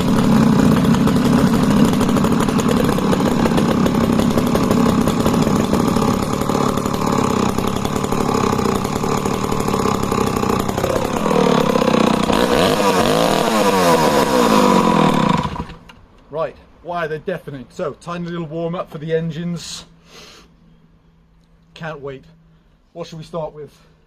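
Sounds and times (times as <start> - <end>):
chainsaws running loudly: 0.0 - 15.8.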